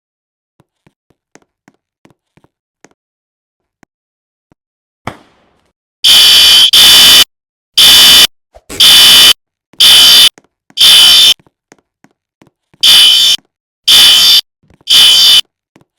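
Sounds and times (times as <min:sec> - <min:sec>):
fire alarm buzzy blasts: 0:06.0 - 0:11.4, 0:12.8 - 0:15.4.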